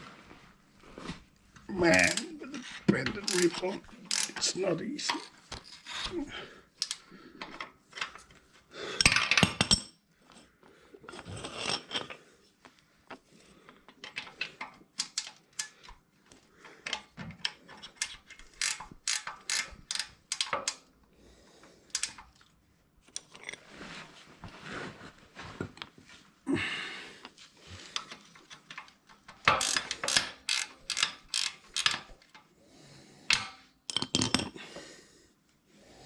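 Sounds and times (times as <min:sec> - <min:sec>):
ratchet wrench clicking: 0:01.9 - 0:02.2, 0:03.2 - 0:04.5, 0:06.8 - 0:07.0, 0:15.0 - 0:15.7, 0:18.0 - 0:20.8, 0:21.9 - 0:22.2, 0:29.5 - 0:32.1.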